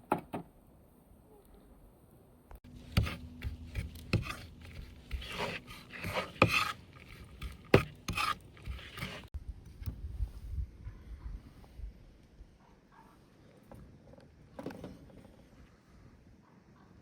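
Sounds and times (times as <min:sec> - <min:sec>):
rasping scraping strokes: 0:02.6 - 0:09.4.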